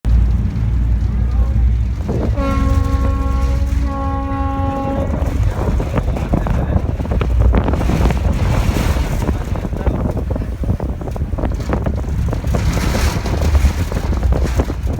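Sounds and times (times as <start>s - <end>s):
low rumble of boat: 0.0s - 14.9s
wind buffeting microphone: 0.0s - 14.9s
ferry horn: 2.1s - 7.2s.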